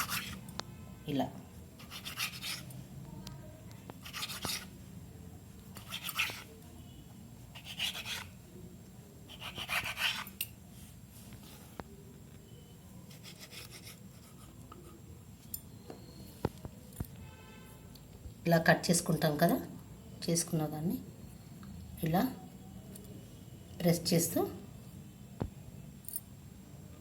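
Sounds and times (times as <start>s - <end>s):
knife slicing dough on a board: 1.8s - 2.7s, 4.0s - 4.7s, 5.8s - 6.5s, 7.6s - 8.3s, 9.3s - 10.4s.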